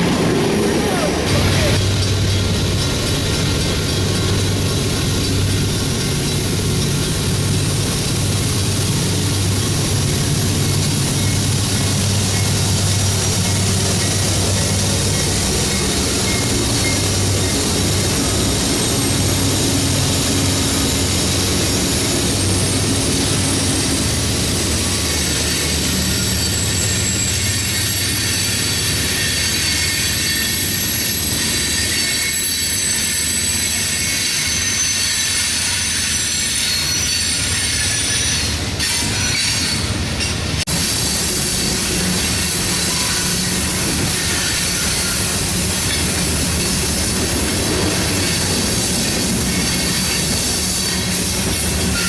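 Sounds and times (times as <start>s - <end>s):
locomotive engine hum: 0.0s - 34.5s, 36.9s - 52.0s
train cars rolling by: 0.0s - 52.0s
train wheels squealing on rails: 0.0s - 52.0s.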